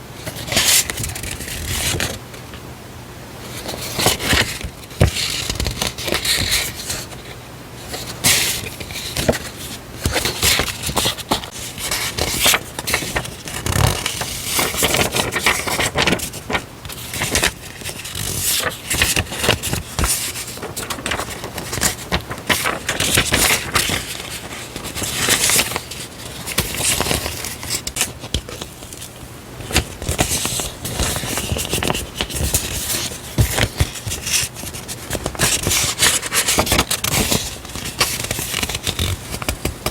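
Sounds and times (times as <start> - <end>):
paper crackles and scrapes: 0.2 - 2.2, 3.4 - 39.9
paper rustling and crinkling: 0.2 - 2.2, 3.4 - 39.9.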